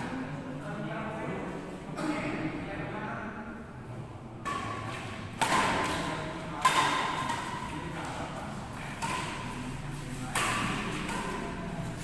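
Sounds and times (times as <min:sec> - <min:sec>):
badminton racket hitting shuttlecock: 0:04.4 - 0:12.0.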